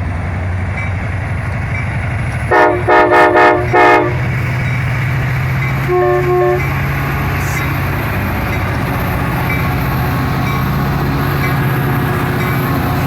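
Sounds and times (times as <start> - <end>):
locomotive engine drone: 0.0 - 13.0
train horn blasts: 2.5 - 4.3, 5.8 - 7.6.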